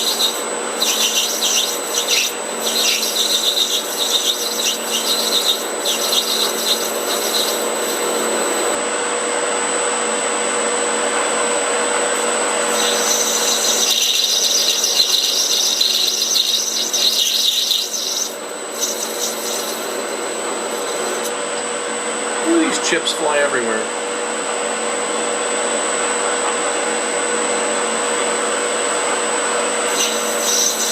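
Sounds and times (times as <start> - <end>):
metal lathe cutting: 0.0 - 8.8, 12.1 - 21.4, 29.7 - 30.9.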